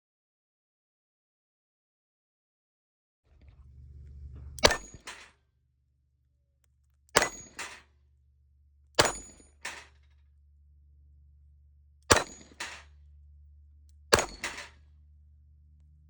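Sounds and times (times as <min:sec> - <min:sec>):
bullet clanging on steel plate: 0:04.3 - 0:05.3, 0:07.1 - 0:07.9, 0:09.0 - 0:10.0, 0:12.1 - 0:12.9, 0:14.1 - 0:14.8
revolver shots: 0:12.1 - 0:12.8, 0:14.2 - 0:14.7.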